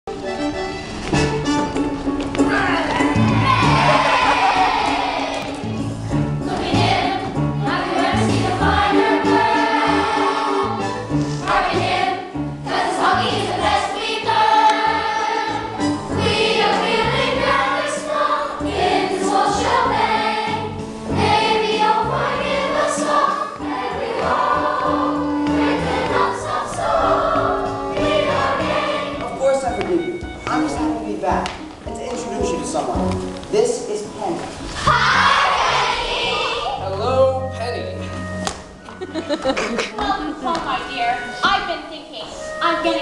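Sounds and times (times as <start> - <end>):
choir singing: 3.1 - 5.7, 6.3 - 29.4, 34.8 - 36.8.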